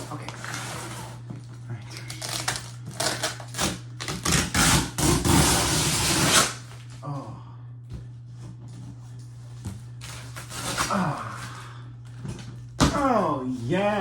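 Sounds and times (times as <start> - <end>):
cardboard tearing: 0.0 - 1.2, 2.0 - 6.8, 10.0 - 11.5
steady low hum: 0.0 - 14.0.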